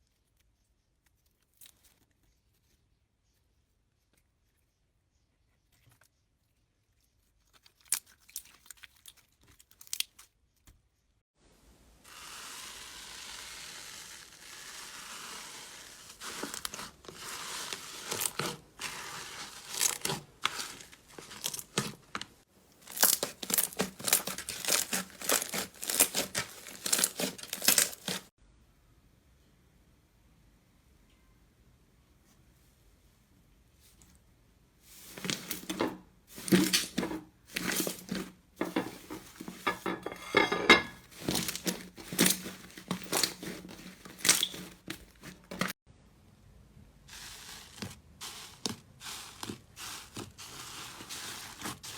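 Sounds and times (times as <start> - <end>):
slime hissing: 12.1 - 16.2.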